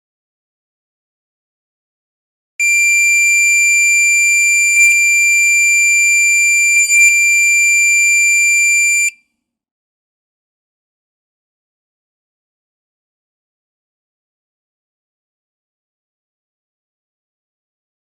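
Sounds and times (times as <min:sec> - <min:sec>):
high-pitched electronic buzzer: 0:02.6 - 0:09.1.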